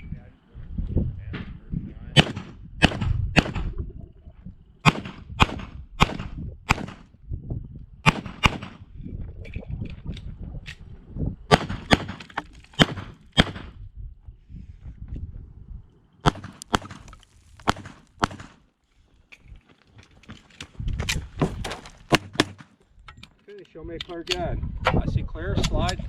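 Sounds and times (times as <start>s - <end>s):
pistol shots: 2.2s - 3.7s, 4.8s - 7.1s, 8.0s - 8.8s, 11.5s - 13.8s, 16.2s - 18.6s, 22.1s - 22.7s.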